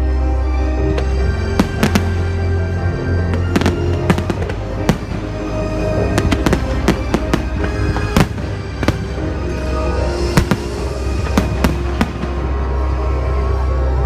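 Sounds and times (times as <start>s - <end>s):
music playing: 0.0s - 14.0s
fireworks bangs: 1.0s - 2.4s, 3.3s - 9.6s, 10.2s - 12.6s.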